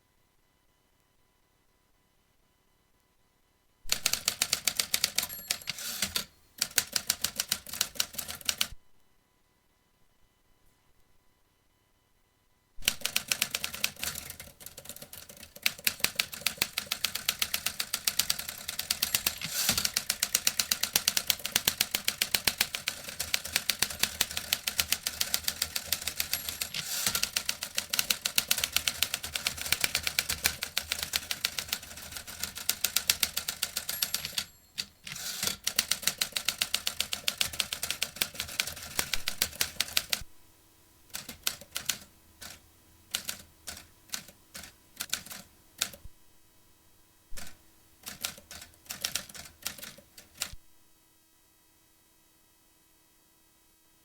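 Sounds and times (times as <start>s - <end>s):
typewriter typing: 3.9s - 8.8s, 12.8s - 40.2s, 41.1s - 46.0s, 47.4s - 50.6s.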